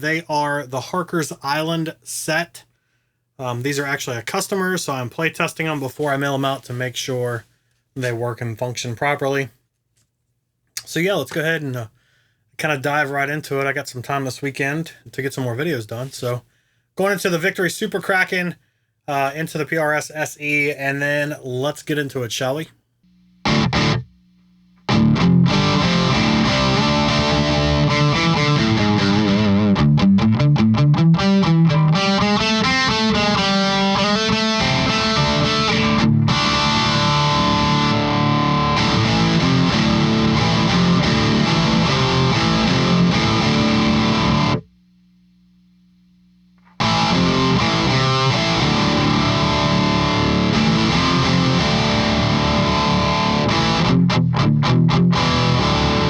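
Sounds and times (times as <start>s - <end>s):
distorted electric guitar riffs: 23.1s - 44.7s, 46.6s - 56.0s.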